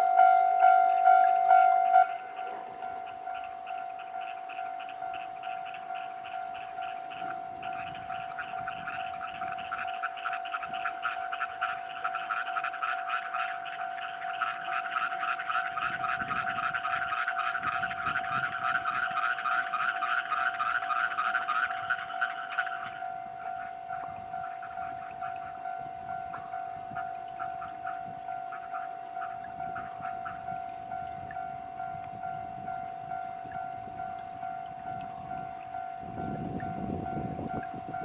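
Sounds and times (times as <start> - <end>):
steady electronic tone: 0.0 - 3.8
level-crossing alarm ringing: 0.0 - 10.1, 21.3 - 38.0.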